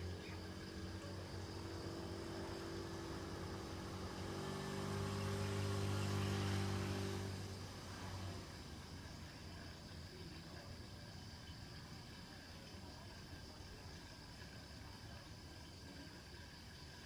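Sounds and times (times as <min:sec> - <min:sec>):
distant vehicle engine hum: 0:00.0 - 0:09.0.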